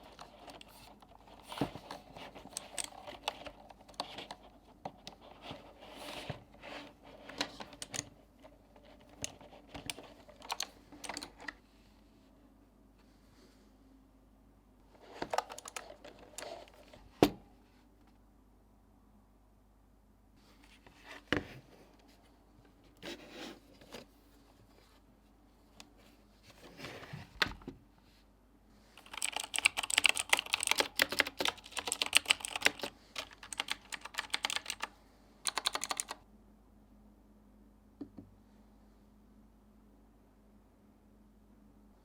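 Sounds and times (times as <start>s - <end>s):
keyboard plastic clicks and rattles: 0.0s - 5.6s, 7.3s - 8.2s, 8.8s - 11.6s, 15.1s - 16.8s, 29.0s - 36.2s.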